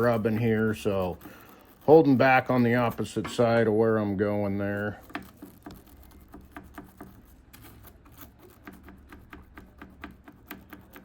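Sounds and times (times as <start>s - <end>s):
stiff brush scrubbing: 0.0s - 11.0s.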